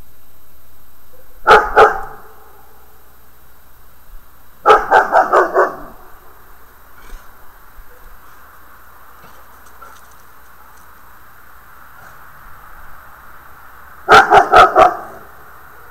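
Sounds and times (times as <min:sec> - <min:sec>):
dog barking: 0:01.1 - 0:02.7, 0:04.6 - 0:06.2, 0:07.0 - 0:08.4, 0:14.0 - 0:15.9.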